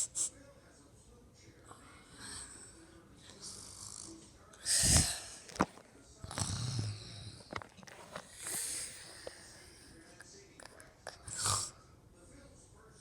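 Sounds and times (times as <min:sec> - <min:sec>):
snoring rasping breath: 0:06.2 - 0:09.6, 0:11.2 - 0:11.8.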